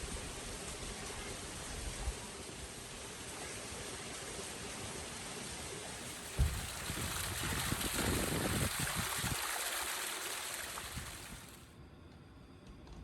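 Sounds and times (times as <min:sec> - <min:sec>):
rain on a tent: 0:00.0 - 0:11.6
low thump: 0:06.3 - 0:07.6.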